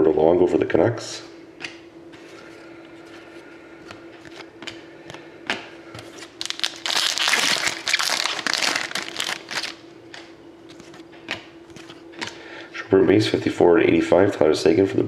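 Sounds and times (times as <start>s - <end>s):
faint steady hum: 0.0s - 15.0s
card packaging crinkling: 6.1s - 9.8s.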